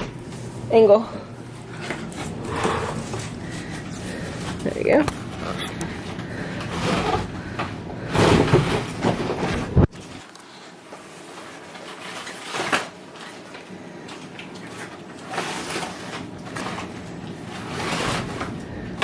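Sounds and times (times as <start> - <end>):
rustling and scraping handling: 0.2 - 12.8.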